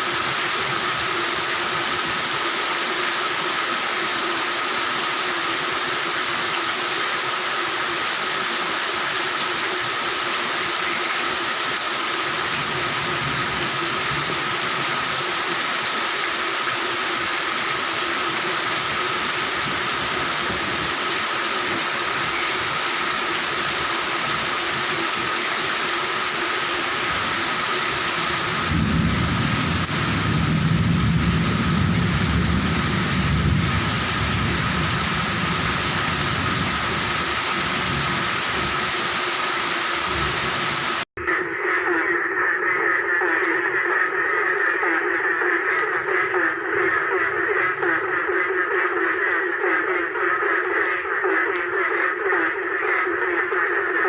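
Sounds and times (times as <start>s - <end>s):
heavy rain: 0.0s - 41.1s
frogs calling: 0.3s - 30.4s, 41.2s - 54.0s
thunder rumbling: 28.3s - 39.1s.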